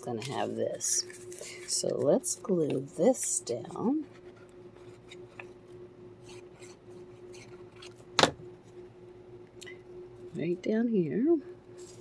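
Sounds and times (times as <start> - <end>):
faint steady hum: 0.0 - 12.0
paper handling: 0.1 - 3.3.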